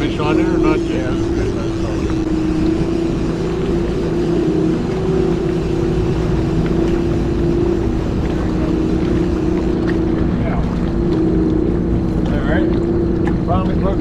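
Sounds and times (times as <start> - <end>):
boat motor droning: 0.0 - 14.0.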